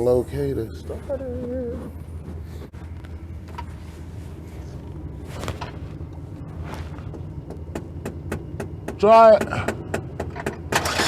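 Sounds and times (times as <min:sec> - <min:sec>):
steady low hum: 0:00.0 - 0:10.9
tools knocking and clattering: 0:07.1 - 0:11.0.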